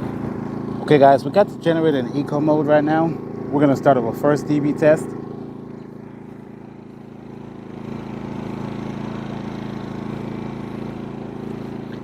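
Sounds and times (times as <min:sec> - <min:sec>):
generator engine humming: 0:00.0 - 0:12.0.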